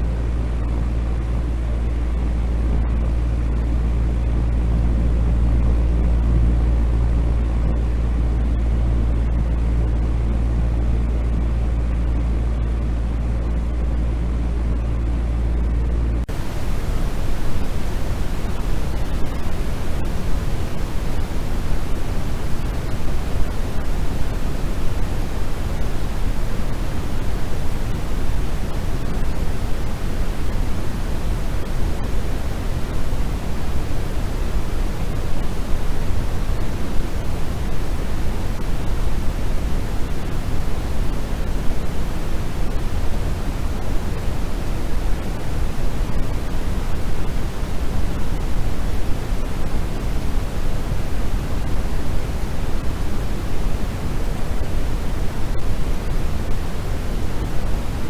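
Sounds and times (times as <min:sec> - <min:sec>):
low pink noise hiss: 0:15.6 - 0:58.0.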